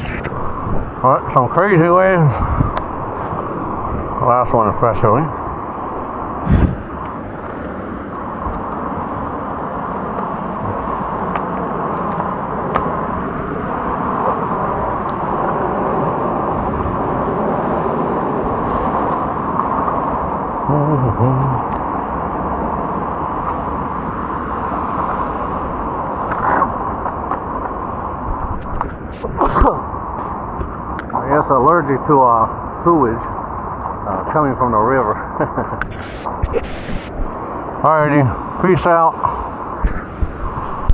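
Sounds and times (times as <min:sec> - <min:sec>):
ocean waves breaking: 0:00.0 - 0:40.9
brief pitched call: 0:35.9 - 0:37.1.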